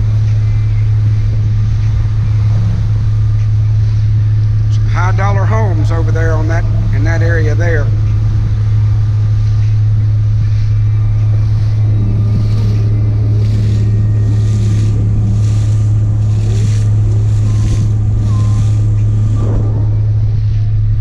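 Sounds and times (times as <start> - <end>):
motorboat engine droning: 0.0 - 21.0
water splashing against hull: 0.0 - 21.0
wind on microphone: 0.0 - 21.0.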